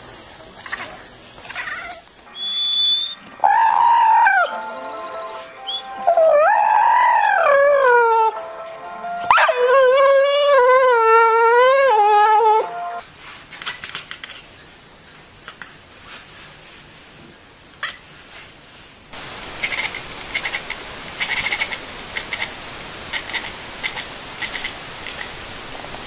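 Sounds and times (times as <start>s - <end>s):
pet howling: 1.5s - 4.7s, 5.7s - 8.4s, 9.2s - 12.8s
short high-pitched squeal: 2.3s - 4.6s.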